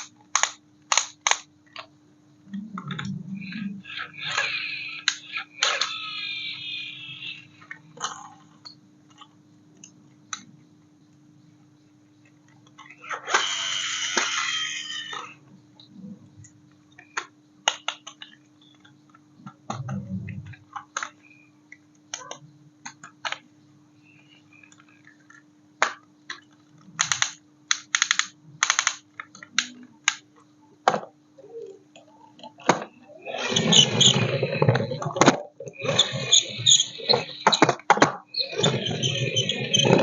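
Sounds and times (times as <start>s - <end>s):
plastic toy clicking: 0.0s - 1.8s, 4.2s - 6.1s, 24.7s - 30.2s
faint steady hum: 0.0s - 40.0s.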